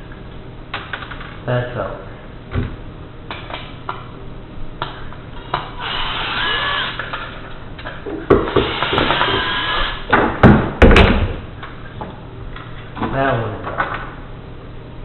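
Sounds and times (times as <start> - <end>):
power screwdriver whining: 5.8 - 7.2, 8.6 - 10.0.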